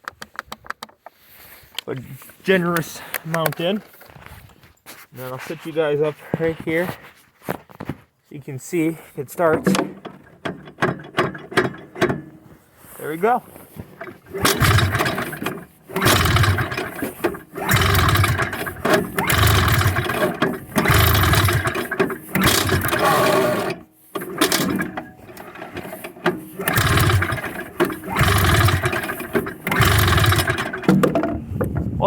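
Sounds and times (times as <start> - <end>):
snowmobile engine cranking: 9.4 - 31.8.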